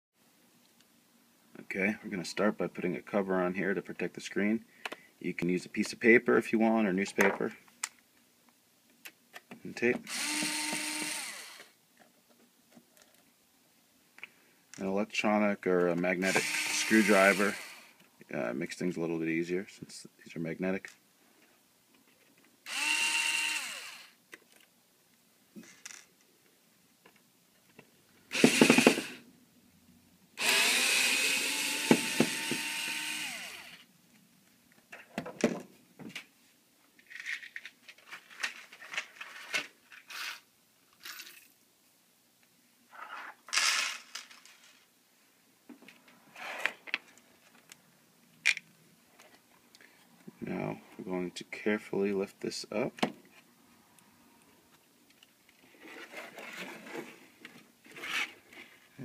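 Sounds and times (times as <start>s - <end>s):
electric screwdriver whirring: 10.1s - 11.7s, 16.3s - 17.9s, 22.7s - 24.2s, 28.3s - 29.2s, 30.4s - 33.8s
screws and plastic cover clicking: 10.1s - 11.7s.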